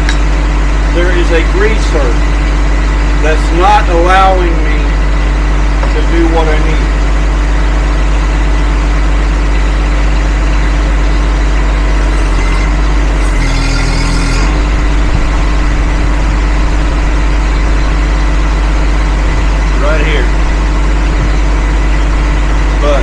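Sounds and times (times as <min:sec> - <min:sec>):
engine idling: 0:00.0 - 0:23.0
rush of noise: 0:14.0 - 0:23.0.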